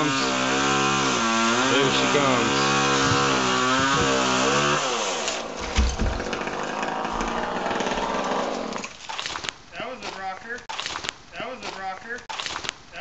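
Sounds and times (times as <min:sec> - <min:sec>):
chainsaw running: 0:00.0 - 0:09.4
heavy low thump: 0:02.8 - 0:04.5, 0:05.6 - 0:06.4.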